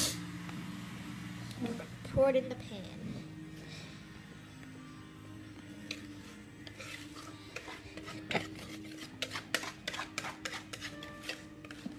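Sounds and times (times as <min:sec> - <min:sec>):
utensil scraping mixing bowl: 0:05.9 - 0:11.9.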